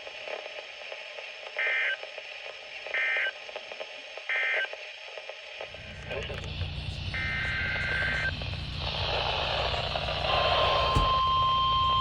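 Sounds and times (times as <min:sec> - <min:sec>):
radio hiss: 0:00.0 - 0:12.0
digital data tone bursts: 0:06.8 - 0:12.0.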